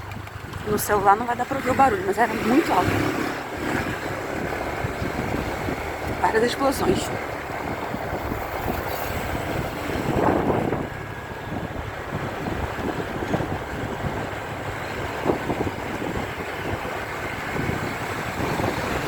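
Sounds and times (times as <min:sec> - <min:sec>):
car engine and road noise: 0:00.0 - 0:19.0
wind on microphone: 0:00.0 - 0:19.0.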